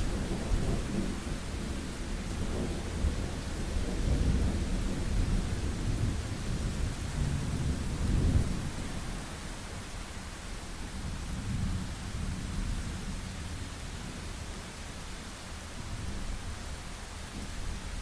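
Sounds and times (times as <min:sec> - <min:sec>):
steady rain: 0:00.0 - 0:18.0.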